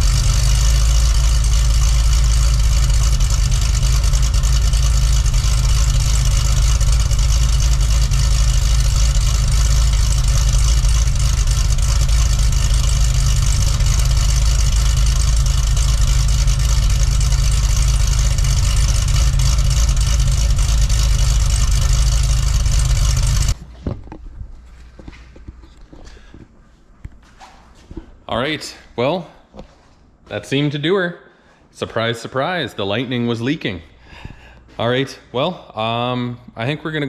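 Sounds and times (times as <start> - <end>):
car engine idling: 0.0 - 23.9.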